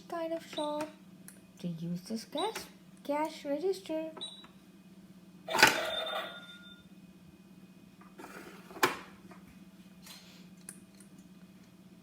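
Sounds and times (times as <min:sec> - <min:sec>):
toy cash register ringing: 0:05.5 - 0:06.8.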